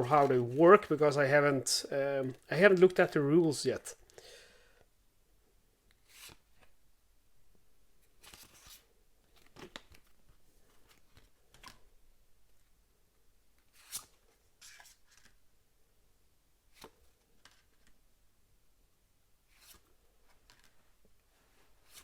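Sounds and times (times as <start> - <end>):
cards rustling and sliding: 5.9 - 6.8, 8.0 - 12.0, 13.6 - 15.4, 16.7 - 18.0, 19.5 - 22.0.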